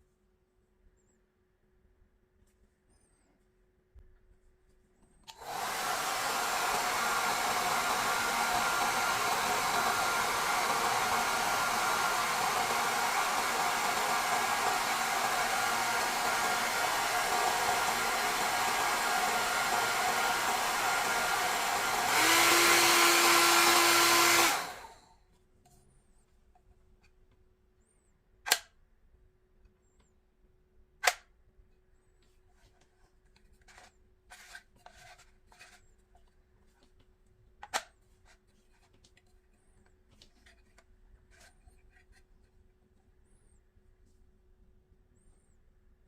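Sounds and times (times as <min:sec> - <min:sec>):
hair dryer running: 0:05.3 - 0:25.1.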